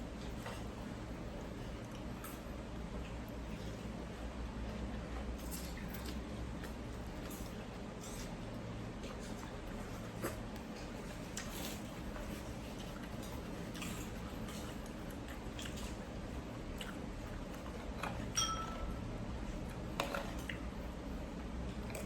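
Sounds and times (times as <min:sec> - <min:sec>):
wet chewing: 0:00.1 - 0:18.4
utensil clinking on bowl: 0:18.3 - 0:18.9.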